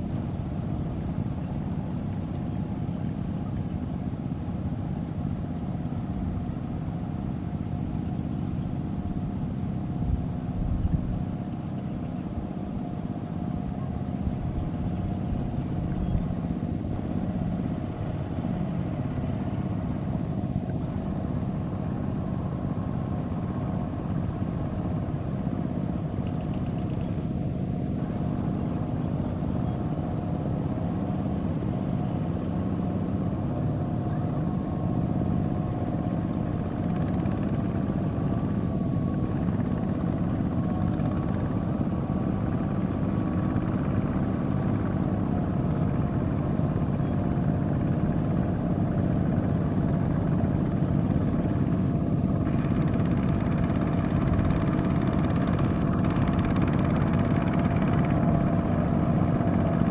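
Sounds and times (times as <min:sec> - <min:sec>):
tractor engine running: 0:12.4 - 0:59.9.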